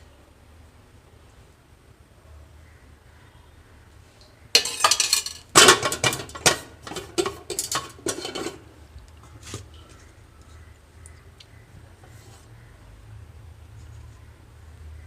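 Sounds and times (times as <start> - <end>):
dishes and cutlery clattering: 4.6 - 8.7.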